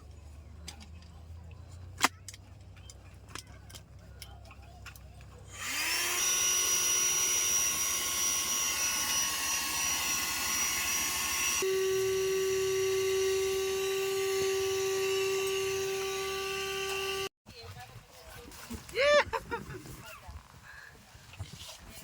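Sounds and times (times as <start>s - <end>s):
small electric motor whirring: 5.5s - 17.3s.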